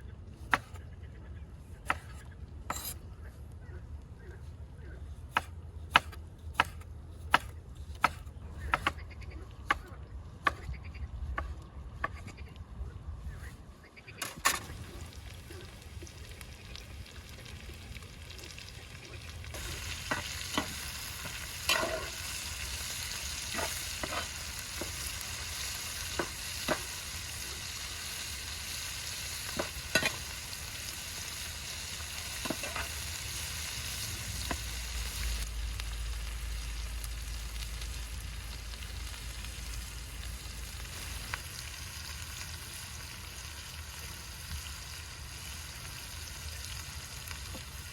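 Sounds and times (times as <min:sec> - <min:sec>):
food sizzling in oil: 0:14.6 - 0:47.9.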